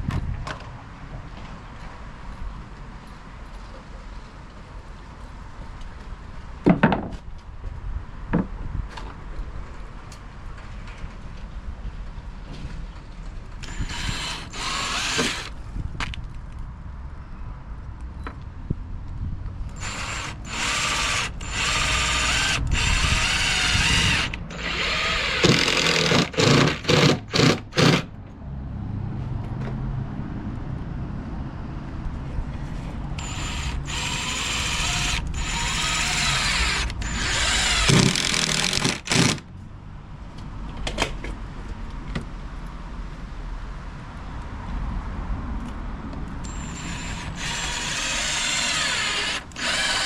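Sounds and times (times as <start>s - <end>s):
power drill driving screws: 13.6s - 15.6s, 19.8s - 28.1s, 33.2s - 39.4s, 46.4s - 50.0s.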